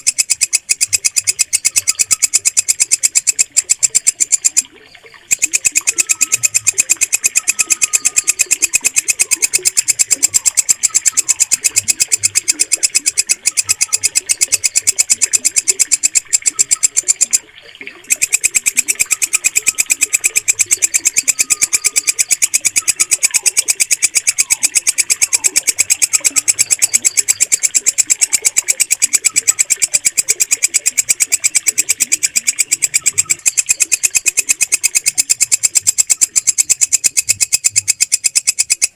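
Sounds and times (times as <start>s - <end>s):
katydid stridulating: 0.0s - 17.4s, 18.0s - 38.9s.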